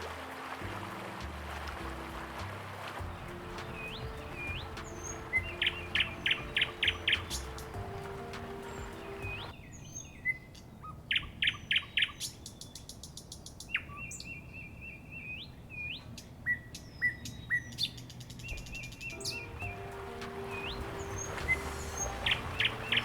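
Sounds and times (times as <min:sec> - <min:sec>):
birds chirping: 0:00.0 - 0:23.0
bird whistled notes: 0:03.0 - 0:10.4, 0:15.2 - 0:23.0
bird trills: 0:03.0 - 0:23.0.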